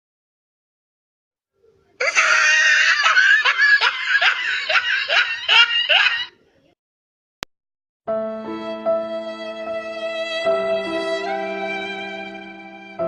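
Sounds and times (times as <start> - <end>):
person laughing hard: 2.0 - 6.3.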